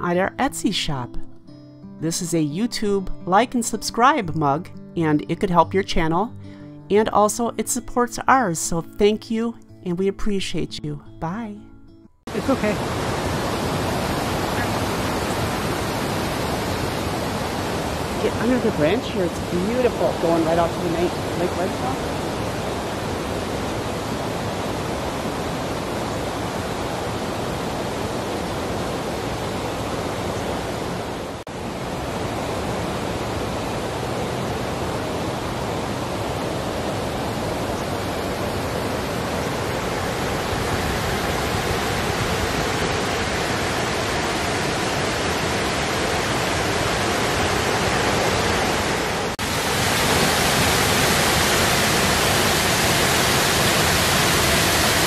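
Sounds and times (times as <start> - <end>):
waterfall rushing: 12.3 - 55.0.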